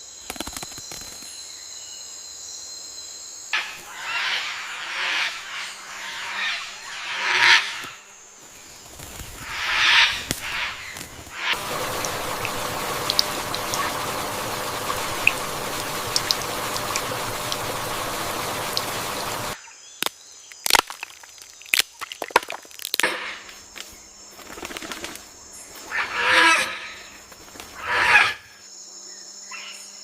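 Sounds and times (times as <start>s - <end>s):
wings fluttering: 0.2s - 1.3s, 3.6s - 19.6s, 23.8s - 26.3s, 26.9s - 28.3s
harsh bird calls: 3.6s - 7.9s, 9.4s - 19.6s
steady rushing background: 3.6s - 8.0s, 8.8s - 19.6s.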